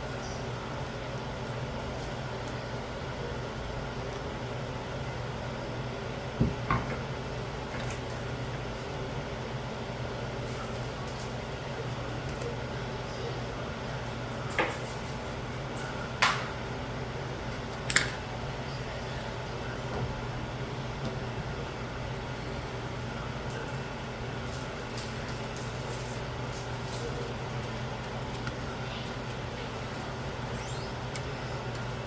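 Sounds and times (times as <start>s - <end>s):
steady low hum: 0.0s - 32.0s.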